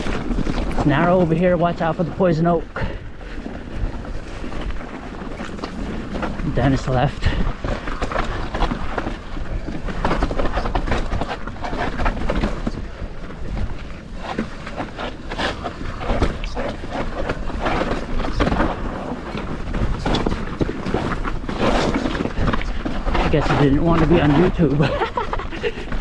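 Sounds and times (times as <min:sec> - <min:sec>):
bike clattering over bumps: 0:00.0 - 0:26.0
bike tyres rolling on loose dirt: 0:00.0 - 0:26.0.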